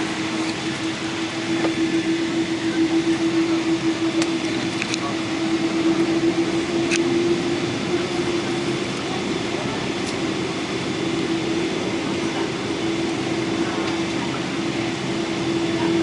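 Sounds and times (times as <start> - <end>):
constant tone: 0.0 - 16.0
engines and cabin air humming: 0.0 - 16.0.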